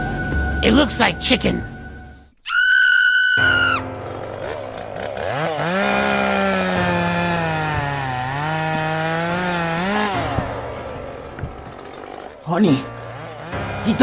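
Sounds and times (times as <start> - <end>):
chainsaw revving: 3.8 - 14.0.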